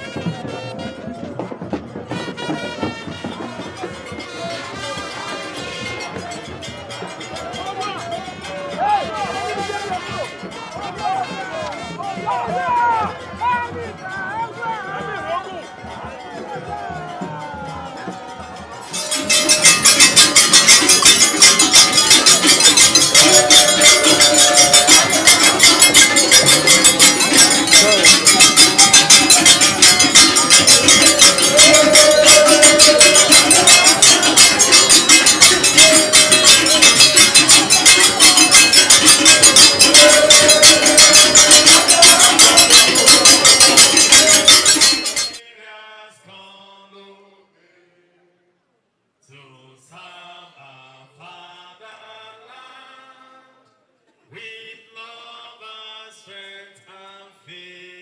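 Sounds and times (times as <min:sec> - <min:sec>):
faint voices: 0:00.0 - 0:45.4
music with metallic percussion: 0:00.0 - 0:45.4
person singing: 0:17.0 - 0:47.3.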